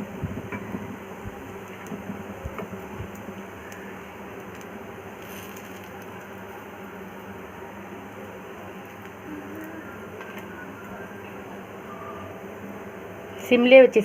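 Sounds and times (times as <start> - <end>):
cutlets sizzling in hot oil: 1.1 - 10.8.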